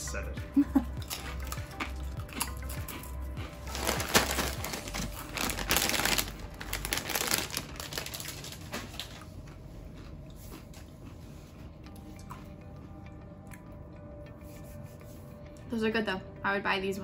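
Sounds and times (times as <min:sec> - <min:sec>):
background music: 0:00.0 - 0:08.7, 0:10.4 - 0:17.0
chip bag crinkling: 0:03.6 - 0:09.3.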